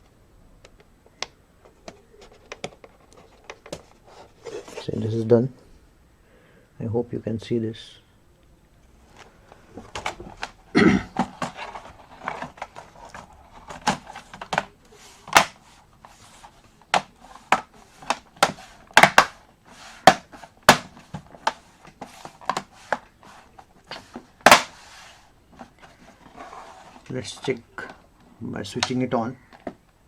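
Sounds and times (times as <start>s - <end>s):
plastic laptop parts clicking: 0.6s - 3.8s, 15.3s - 15.6s, 16.8s - 19.4s.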